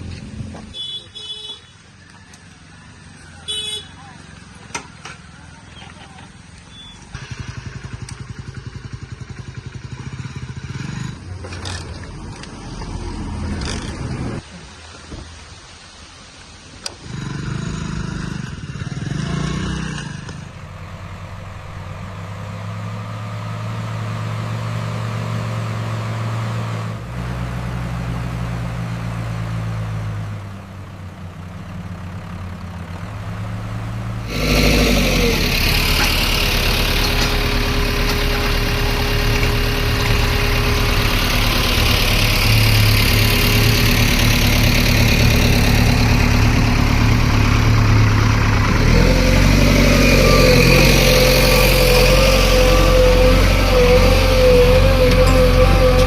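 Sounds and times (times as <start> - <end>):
diesel machinery engine running: 18.3 - 56.0.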